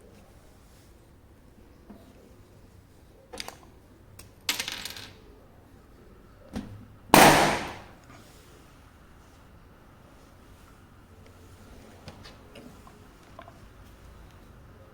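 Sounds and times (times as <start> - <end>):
loud bang: 7.2 - 8.0.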